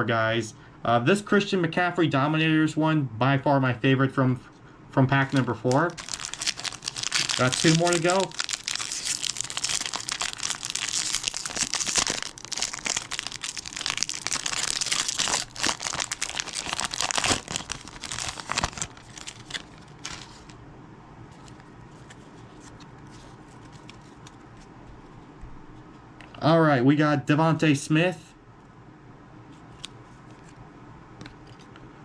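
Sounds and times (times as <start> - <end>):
plastic wrapper crinkling and tearing: 5.1 - 20.6.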